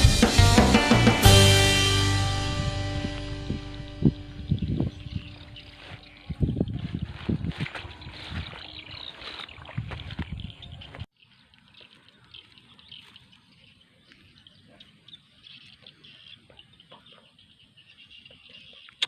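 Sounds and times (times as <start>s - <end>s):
loud noise cutting off: 0.0s - 4.6s
birds chirping faintly: 2.7s - 19.0s.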